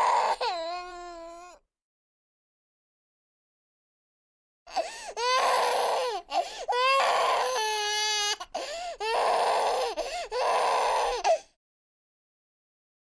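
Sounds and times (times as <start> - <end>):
infant crying: 0.0 - 1.6, 4.7 - 11.6.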